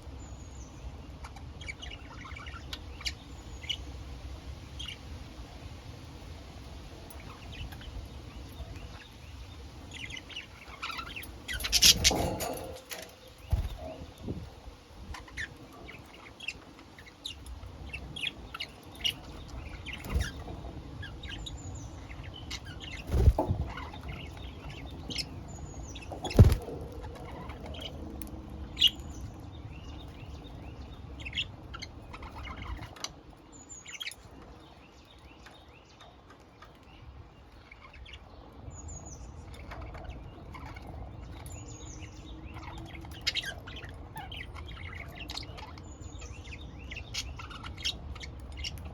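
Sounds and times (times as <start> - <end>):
budgerigars chirping: 7.1 - 28.0, 39.0 - 48.9.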